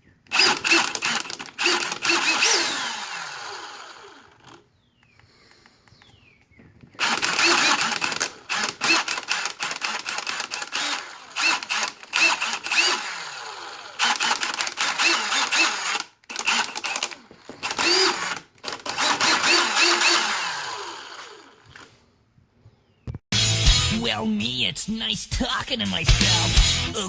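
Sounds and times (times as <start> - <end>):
impact driver motor spinning: 0.2 - 4.7, 6.8 - 22.0.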